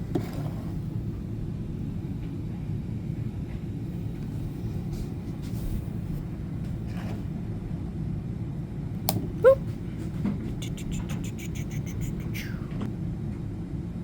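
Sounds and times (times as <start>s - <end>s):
low machine rumble: 0.0s - 14.0s.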